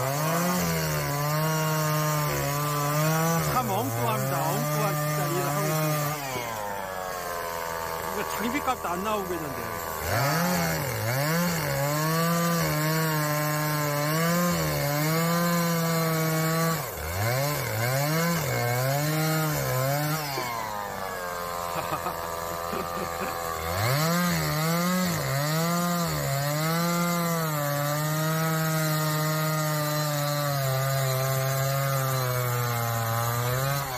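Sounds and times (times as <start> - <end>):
chainsaw cutting wood: 0.0 - 33.9.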